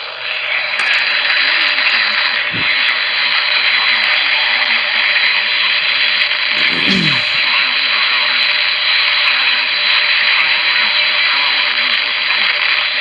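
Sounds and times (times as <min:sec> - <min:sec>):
faint voice: 0:05.9 - 0:07.5.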